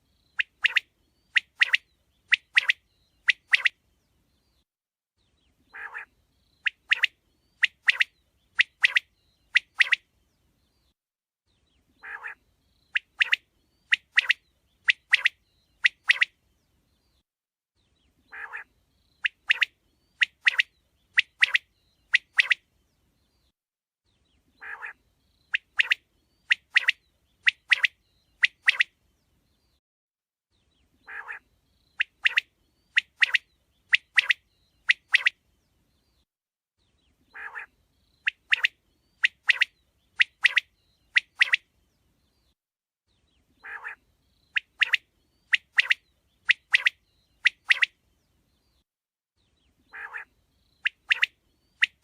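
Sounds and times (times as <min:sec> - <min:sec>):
quail singing: 0:05.7 - 0:10.0, 0:12.0 - 0:16.3, 0:18.3 - 0:20.6, 0:24.6 - 0:25.0, 0:31.0 - 0:31.4, 0:37.3 - 0:41.6, 0:43.6 - 0:47.9, 0:49.9 - 0:52.0.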